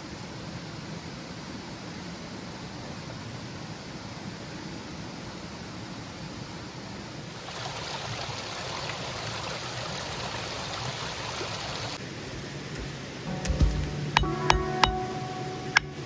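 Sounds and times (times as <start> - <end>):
forest stream flowing: 6.2 - 16.0
music: 13.3 - 16.0.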